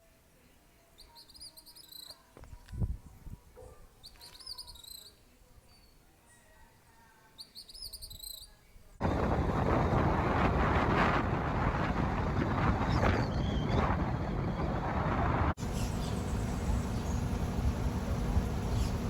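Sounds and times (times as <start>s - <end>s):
bird chirping: 1.0s - 2.3s, 4.0s - 6.0s, 7.4s - 8.6s, 15.6s - 19.0s
loud steady rushing noise: 9.0s - 19.0s.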